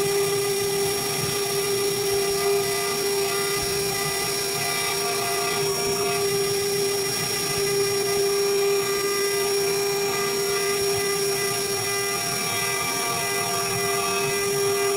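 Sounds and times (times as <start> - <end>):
router spindle high whine: 0.0 - 14.9.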